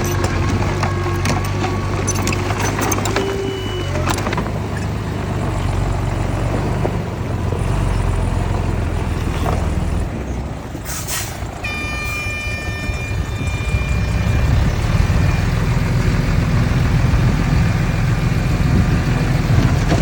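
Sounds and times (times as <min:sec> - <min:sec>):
diesel engine rumble: 0:00.0 - 0:20.0
high multi-pitched squeal: 0:11.6 - 0:16.4.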